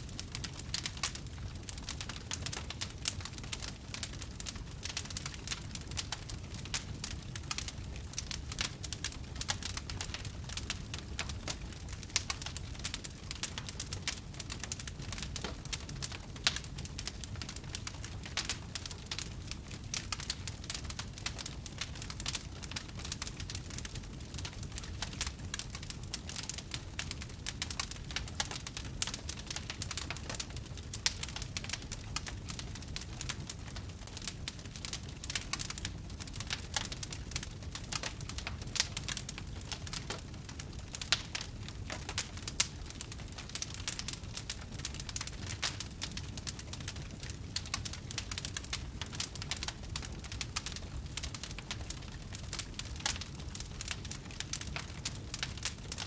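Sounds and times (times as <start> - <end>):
campfire crackling and popping: 0.0 - 56.0
low rumble of burning fire: 0.0 - 56.0.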